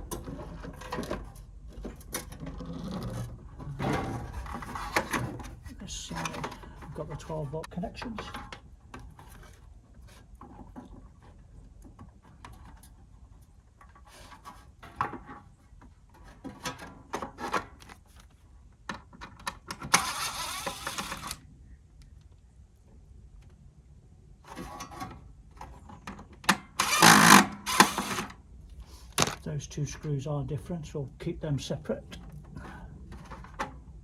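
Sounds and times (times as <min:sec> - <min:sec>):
screws and parts clicking: 0:26.8 - 0:28.3.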